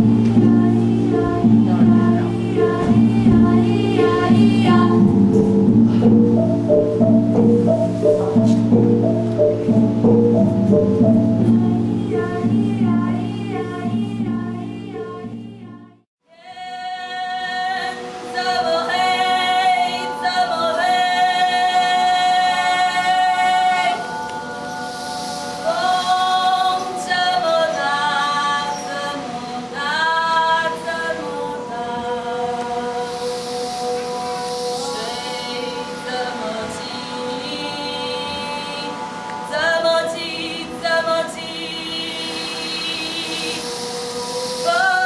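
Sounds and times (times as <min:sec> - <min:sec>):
low sustained tones: 0:00.0 - 0:15.8
steady drone: 0:00.0 - 0:15.8
voices singing long held notes: 0:00.0 - 0:45.0.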